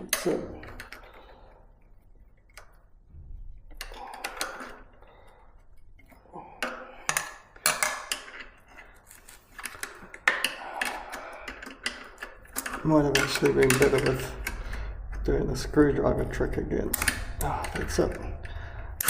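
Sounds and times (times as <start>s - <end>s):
pliers clicking and scraping metal: 5.6s - 15.2s.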